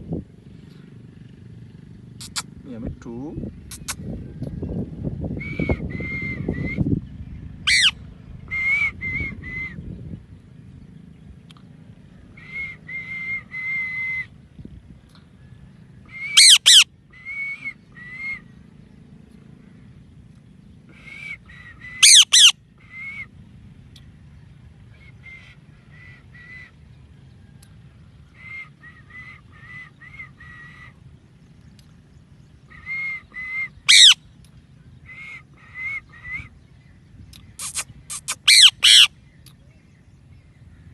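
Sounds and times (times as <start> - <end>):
parrot chirping: 2.2 - 2.4, 7.7 - 8.0, 16.3 - 16.8, 22.0 - 22.5, 32.8 - 34.2, 37.6 - 39.1.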